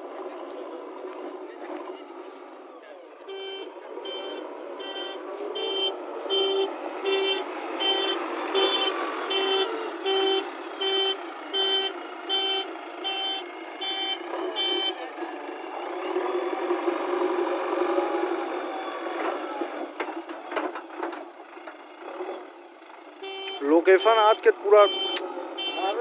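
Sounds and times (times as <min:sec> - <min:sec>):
reversing alarm beeping: 0:23.3 - 0:26.0.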